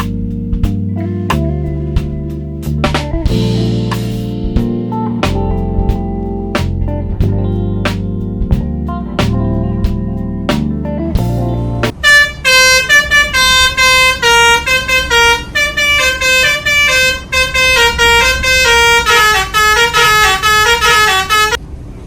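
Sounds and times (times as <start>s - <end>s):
guitar music: 0.0s - 21.5s
many-toned bus horn tune: 12.0s - 21.6s.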